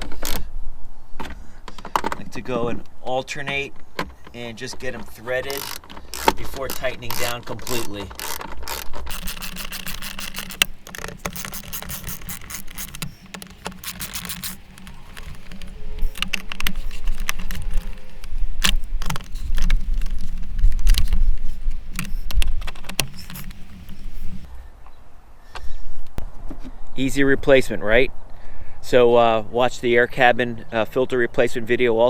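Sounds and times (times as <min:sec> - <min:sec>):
metal rattles and scrapes: 0:09.1 - 0:24.5
socket ratchet clicking: 0:09.1 - 0:24.5.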